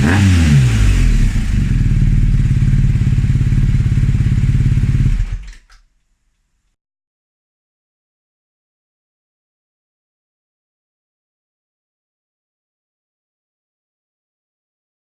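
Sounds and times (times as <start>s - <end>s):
motorcycle engine idling: 0.2s - 5.7s.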